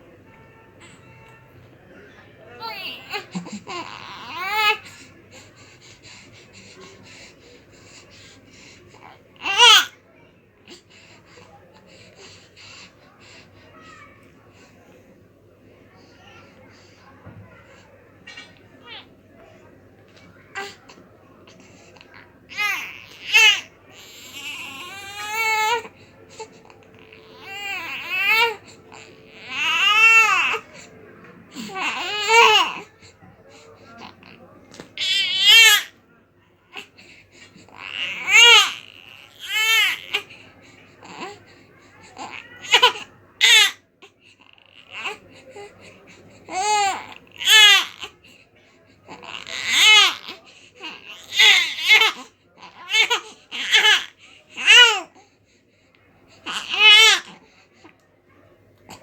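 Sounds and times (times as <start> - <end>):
newborn baby crying: 2.6 - 4.9, 22.5 - 30.8, 31.6 - 32.9, 37.6 - 40.2, 46.5 - 48.1, 56.4 - 57.4.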